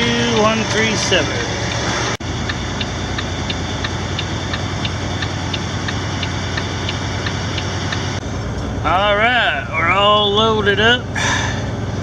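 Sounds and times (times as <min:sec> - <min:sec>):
truck diesel engine idling: 0:00.0 - 0:12.0
light regular ticking: 0:01.6 - 0:08.2.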